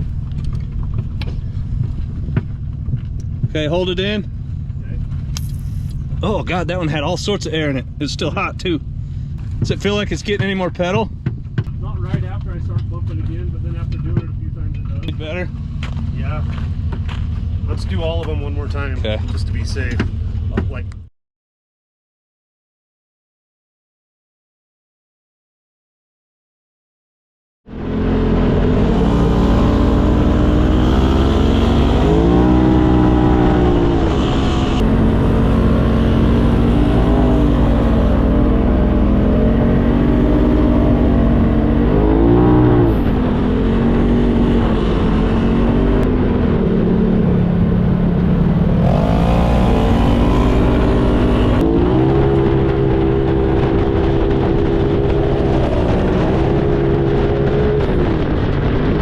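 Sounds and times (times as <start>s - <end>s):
low driving rumble: 0.0s - 21.1s, 27.7s - 59.0s
engine revs rising and falling: 27.7s - 59.0s.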